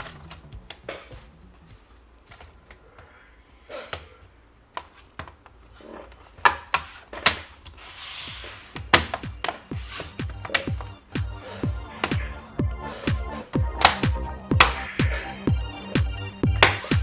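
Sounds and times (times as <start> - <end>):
scraping rustle: 4.2 - 9.0
plastic snaps: 13.8 - 15.0, 16.5 - 17.0.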